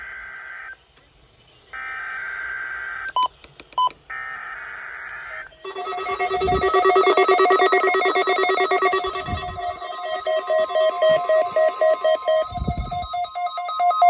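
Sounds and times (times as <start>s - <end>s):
screechy digital data bursts: 5.6s - 14.0s
short beeps: 5.6s - 14.0s
warbling alert alarm: 5.6s - 14.0s.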